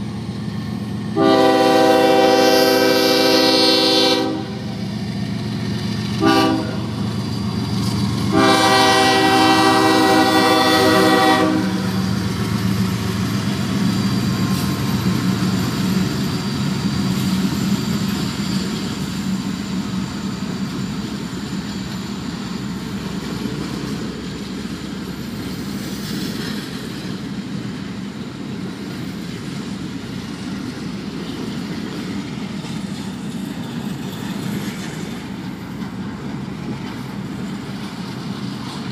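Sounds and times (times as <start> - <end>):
train cars rumbling and clattering: 0.0 - 38.9
train horn blasts: 1.2 - 4.8, 6.2 - 7.0, 8.2 - 12.1.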